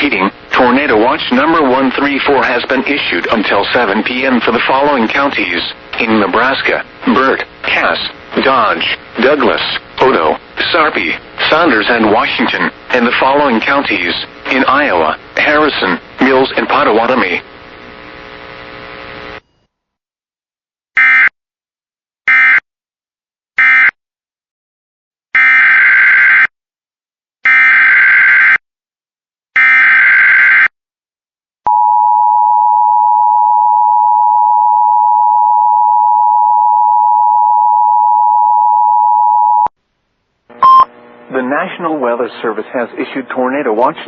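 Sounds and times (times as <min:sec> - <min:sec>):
steady attention-signal tone: 0:31.7 - 0:39.7, 0:40.5 - 0:43.9
short data bursts: 0:40.5 - 0:41.0
longer data bursts: 0:40.5 - 0:41.7.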